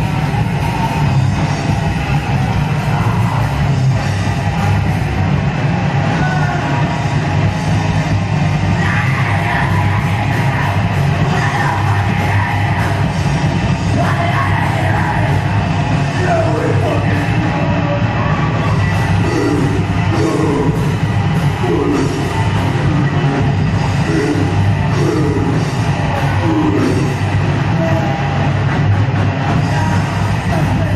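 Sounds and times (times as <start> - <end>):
heavy metal music: 0.0 - 30.9
shouted vocals: 5.9 - 7.4, 8.5 - 28.6.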